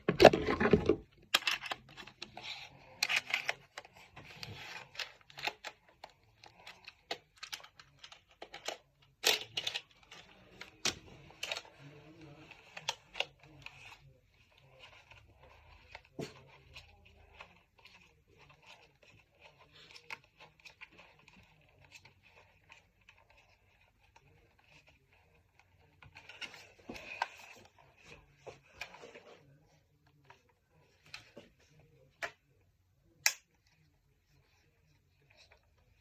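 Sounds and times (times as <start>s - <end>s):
plastic parts clicking: 0.0s - 11.8s
plastic parts scraping: 0.0s - 29.4s.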